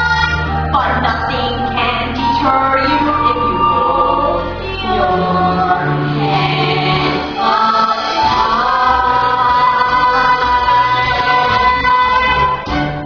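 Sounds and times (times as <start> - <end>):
voices singing together: 3.0 - 12.8.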